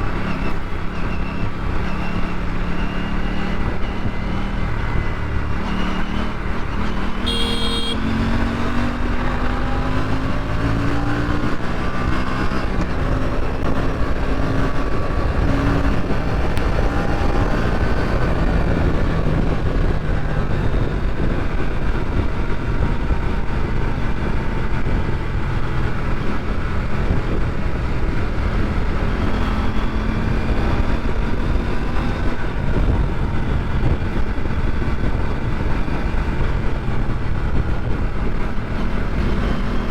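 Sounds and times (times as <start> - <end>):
motorcycle engine accelerating: 0.0 - 39.9
road noise: 0.0 - 39.9
wind noise: 0.0 - 39.9
vehicle horn toot: 7.1 - 8.3.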